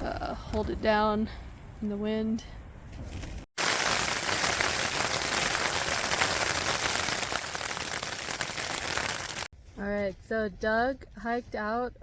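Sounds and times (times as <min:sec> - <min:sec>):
rain pattering on tent fabric: 0:03.6 - 0:09.5.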